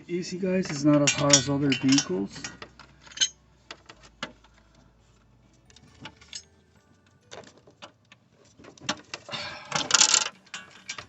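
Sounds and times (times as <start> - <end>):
metal parts clattering: 0.3 - 11.0
metal tools clicking and knocking: 0.5 - 4.8, 5.7 - 11.0.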